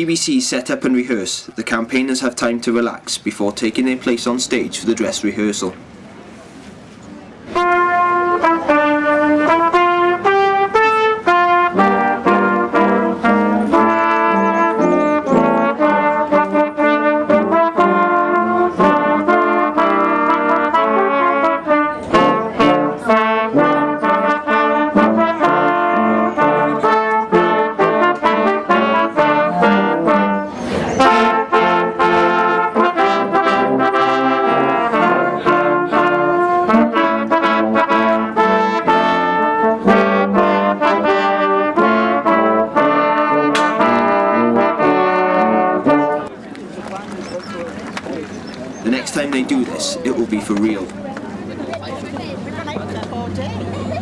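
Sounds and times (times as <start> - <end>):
brass ensemble playing melody: 7.5 - 46.3.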